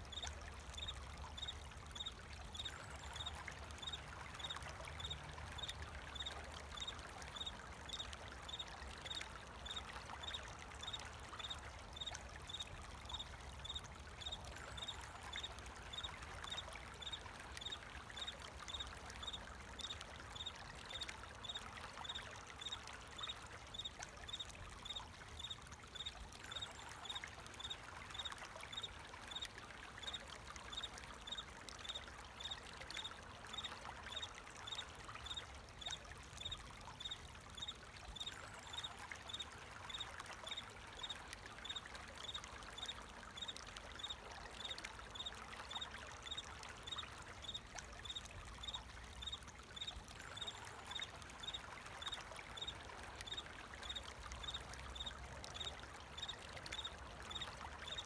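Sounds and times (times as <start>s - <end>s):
water trickling: 0.0s - 58.0s
cricket chirping: 46.3s - 52.7s, 53.3s - 58.0s.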